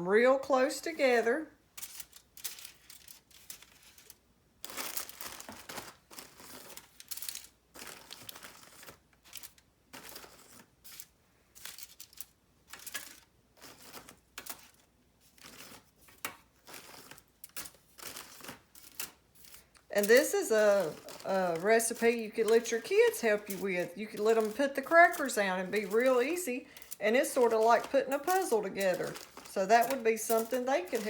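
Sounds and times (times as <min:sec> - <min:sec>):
foil and packaging crinkling: 0:01.8 - 0:31.0
crackers set down on baking sheet: 0:15.4 - 0:31.0.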